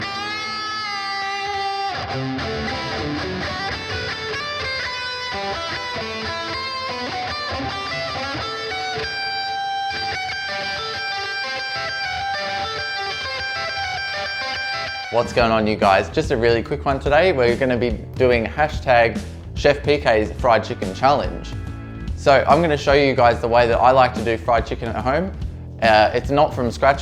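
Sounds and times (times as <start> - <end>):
electric guitar lead: 0.0 - 26.9.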